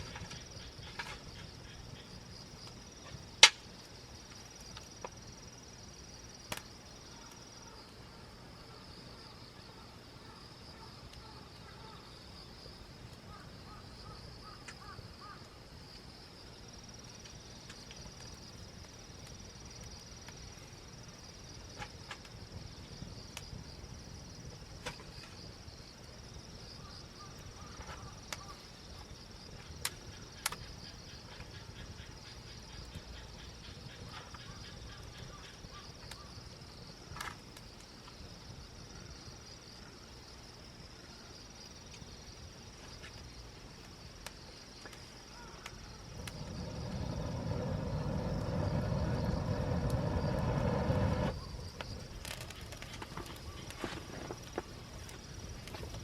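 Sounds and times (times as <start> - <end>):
campfire crackling pops: 0.0 - 5.5, 6.3 - 7.6, 17.0 - 26.5, 27.3 - 38.3, 41.8 - 56.0
crickets trilling: 0.0 - 56.0.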